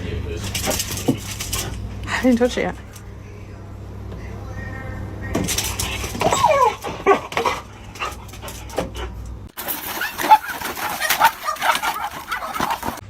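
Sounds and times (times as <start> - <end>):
dog whining and yelping: 5.7 - 13.0.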